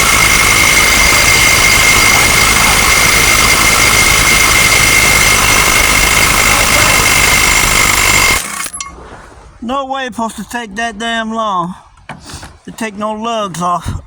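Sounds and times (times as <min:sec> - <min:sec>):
impact wrench whirring: 0:00.0 - 0:08.8.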